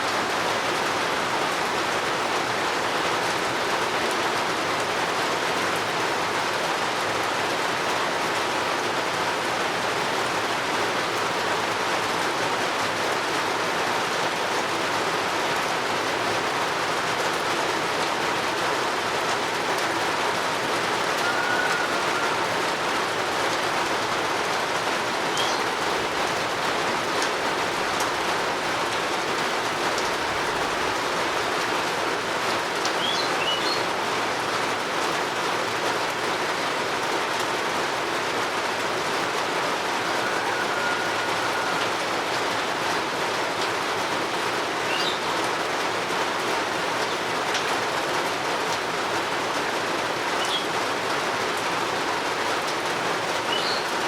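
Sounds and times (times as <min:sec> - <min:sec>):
steady rain falling: 0:00.0 - 0:54.0
faint bird chirps and whistles: 0:25.3 - 0:25.7, 0:33.0 - 0:33.8, 0:44.9 - 0:45.2, 0:53.5 - 0:53.9.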